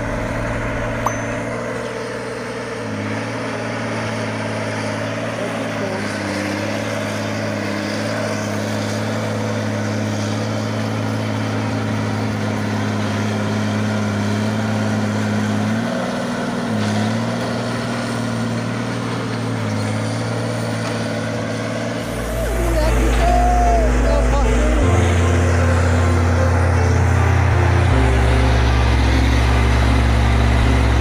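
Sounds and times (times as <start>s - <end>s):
bulldozer diesel engine running: 0.0s - 31.0s.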